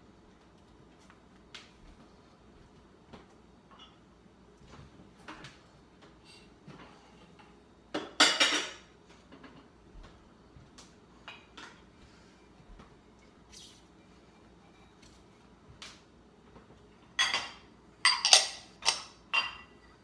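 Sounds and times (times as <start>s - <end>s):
dishes and cutlery clinking: 3.7s - 4.0s, 6.8s - 9.7s, 17.0s - 20.0s
crockery clattering: 8.0s - 9.7s, 17.1s - 20.0s.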